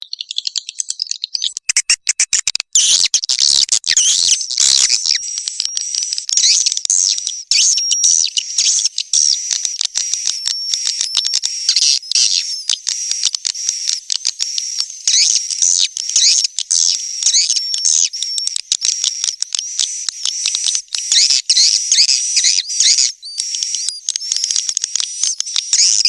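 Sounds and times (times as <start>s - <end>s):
fast clicking bird calls: 0.0s - 26.0s
swiftlet chirps and twitters: 0.2s - 26.0s.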